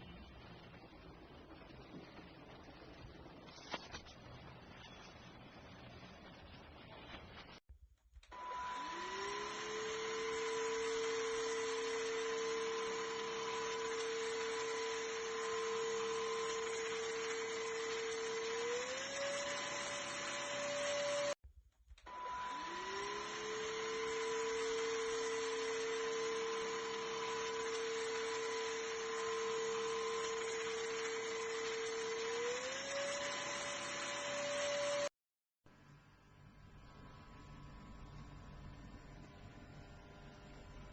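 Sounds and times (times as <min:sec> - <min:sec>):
cordless vacuum cleaner motor whine: 0:08.3 - 0:21.4, 0:22.0 - 0:35.1, 0:35.8 - 0:40.9.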